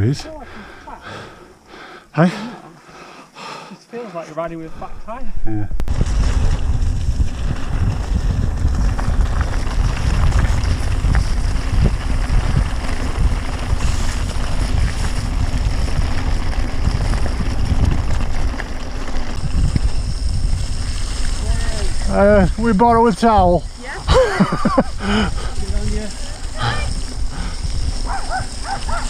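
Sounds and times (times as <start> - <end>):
wind buffeting microphone: 4.7 - 29.0
bike clicks and rattles: 5.8 - 29.0.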